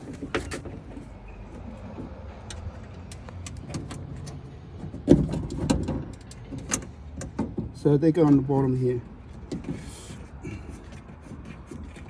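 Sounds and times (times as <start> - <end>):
clicks of screws and metal parts: 5.1 - 7.6.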